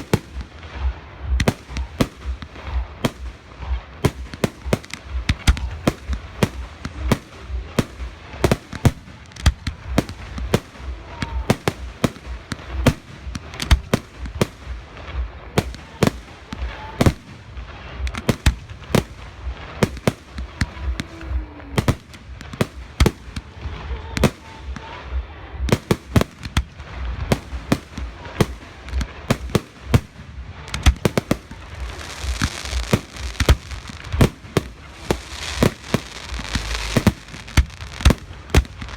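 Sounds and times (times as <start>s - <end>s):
fireworks bursts and bangs: 0.0s - 38.9s
hissing crackle: 0.0s - 38.9s.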